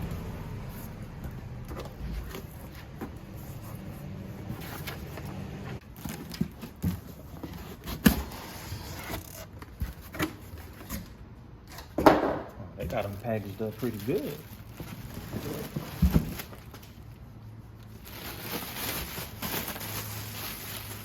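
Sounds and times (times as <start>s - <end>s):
cardboard box being handled: 13.8s - 16.9s.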